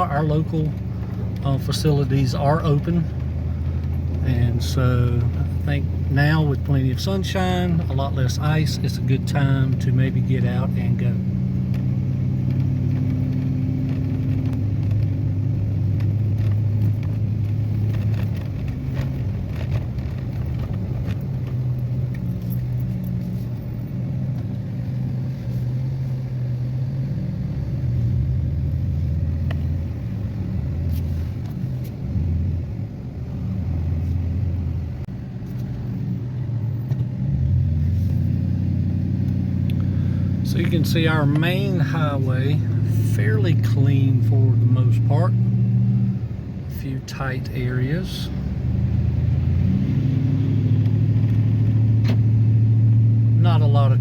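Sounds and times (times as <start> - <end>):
pickup truck engine hum: 0.0 - 54.0
road noise: 0.0 - 54.0.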